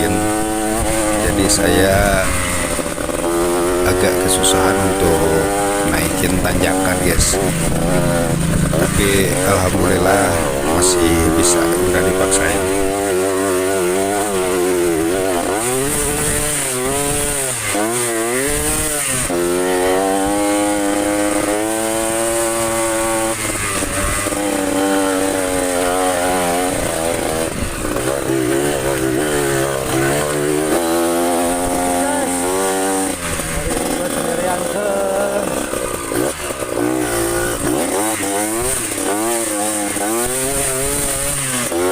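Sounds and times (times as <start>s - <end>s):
motorcycle engine revving: 0.0s - 41.9s.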